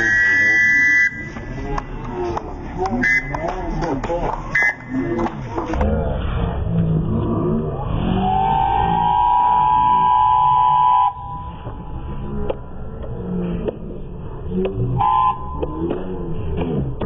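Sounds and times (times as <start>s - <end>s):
whistle blasts: 0.0s - 1.6s, 3.0s - 3.6s, 4.5s - 5.1s, 8.2s - 11.6s, 15.0s - 15.6s.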